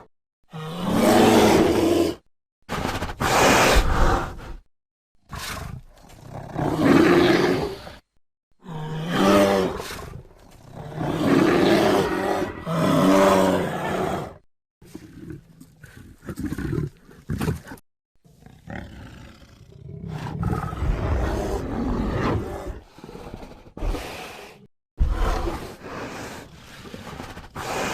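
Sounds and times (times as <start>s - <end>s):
dinosaur roars: 0.5s - 2.2s, 8.6s - 14.4s, 18.6s - 26.8s.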